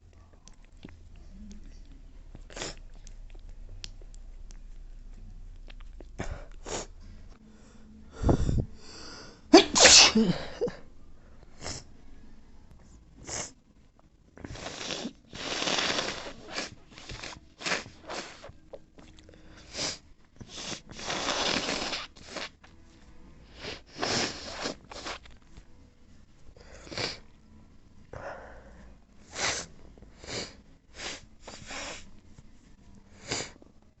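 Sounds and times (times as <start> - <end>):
person sneezing and sniffling: 6.2 - 6.9, 9.5 - 10.8, 14.4 - 18.5, 19.6 - 22.6, 23.6 - 25.3, 29.3 - 32.1.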